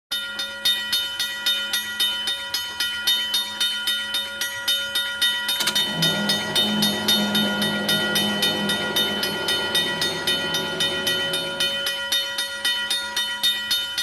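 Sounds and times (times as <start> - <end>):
train wheels clicking over rails: 5.5 - 7.4
low train rumble: 5.6 - 13.2.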